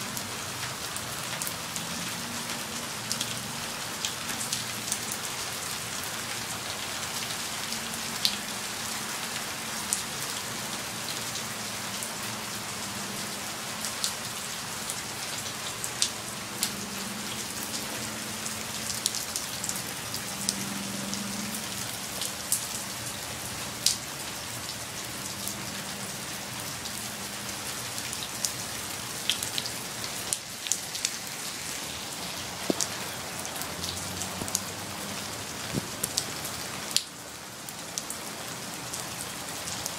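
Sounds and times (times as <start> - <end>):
rain falling: 0.0 - 39.9
raindrops tapping: 32.2 - 34.9, 35.6 - 36.3.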